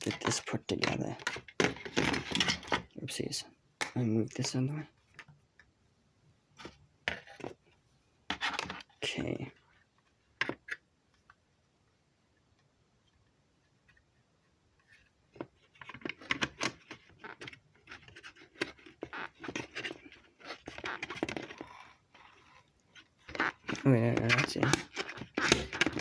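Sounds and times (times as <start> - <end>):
plastic and metal clicks and rattles: 23.3 - 26.0.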